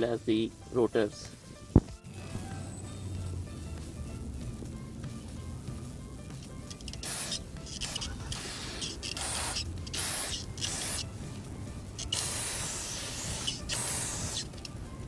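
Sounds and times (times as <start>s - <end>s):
spray can hissing: 6.5s - 11.2s, 11.9s - 14.8s.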